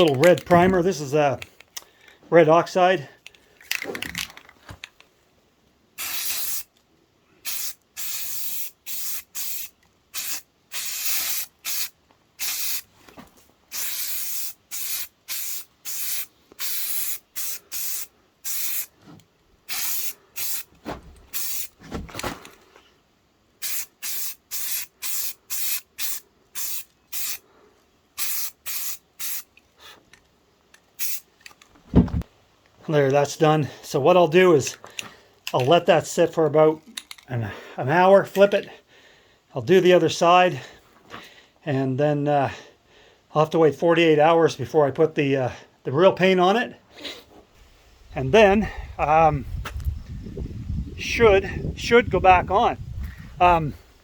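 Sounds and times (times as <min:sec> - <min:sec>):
spray can hissing bursts: 0:06.0 - 0:06.7, 0:07.4 - 0:12.9, 0:13.7 - 0:19.0, 0:19.7 - 0:20.7, 0:21.3 - 0:21.8, 0:23.6 - 0:27.4, 0:28.2 - 0:29.5, 0:31.0 - 0:31.3.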